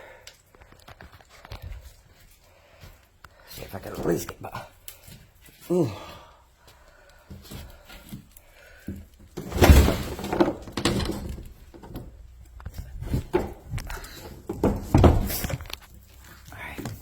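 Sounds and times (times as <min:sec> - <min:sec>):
debris knocking and clattering: 0:08.8 - 0:16.2.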